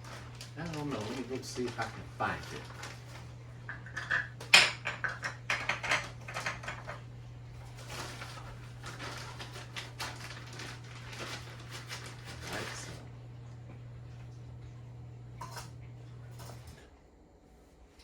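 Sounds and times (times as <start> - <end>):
rustling: 7.8 - 13.0.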